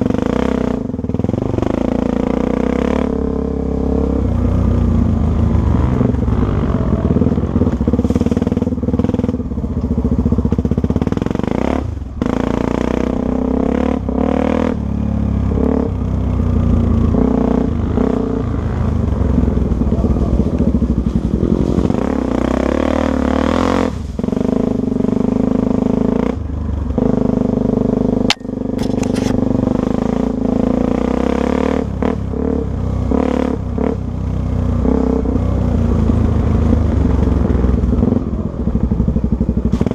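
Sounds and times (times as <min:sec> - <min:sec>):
motorcycle engine revving: 0:00.0 - 0:39.9
sharp click: 0:28.3 - 0:29.4.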